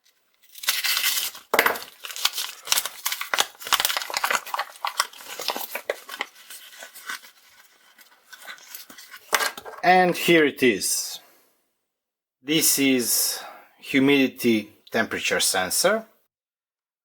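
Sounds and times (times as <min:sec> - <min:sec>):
package being torn open: 0:00.0 - 0:09.3.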